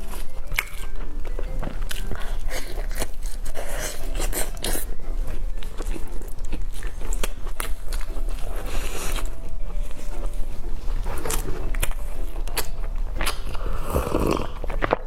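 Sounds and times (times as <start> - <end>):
person biting and chewing: 0.0 - 5.0, 5.6 - 9.8, 11.0 - 15.0.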